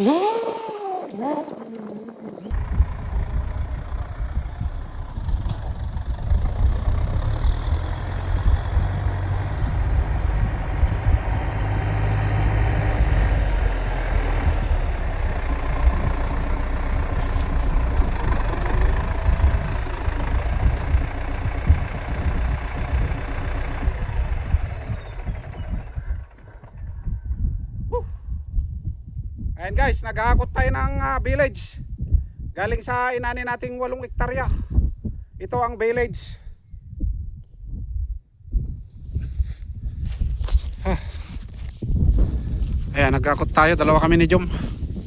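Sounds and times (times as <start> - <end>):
tractor engine rumbling: 0.0 - 28.6, 38.5 - 45.0.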